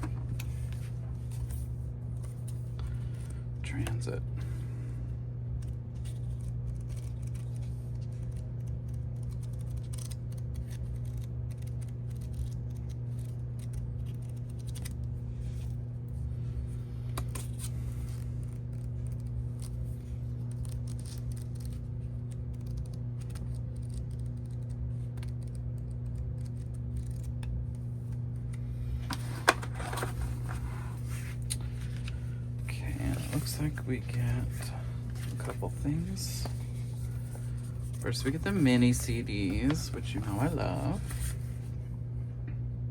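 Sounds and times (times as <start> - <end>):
steady low hum: 0.0 - 42.9
packaging crinkling and scraping: 29.1 - 32.2.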